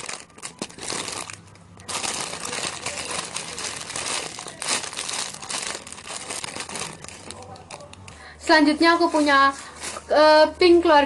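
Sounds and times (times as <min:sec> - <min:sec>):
plastic packaging crinkling: 0:00.0 - 0:08.1.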